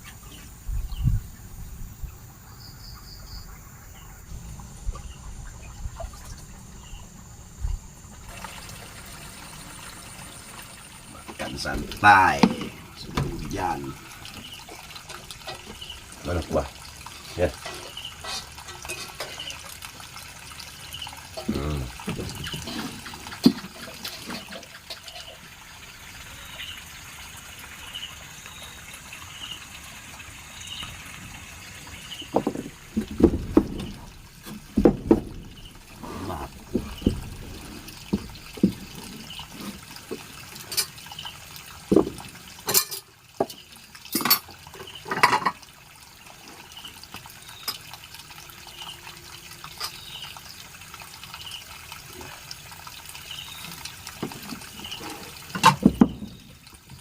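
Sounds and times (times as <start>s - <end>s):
water trickling and sloshing: 0.0s - 57.0s
sharp knocks and clunks: 11.2s - 15.8s, 22.0s - 24.8s, 32.2s - 40.9s, 41.8s - 43.6s, 55.6s - 56.6s.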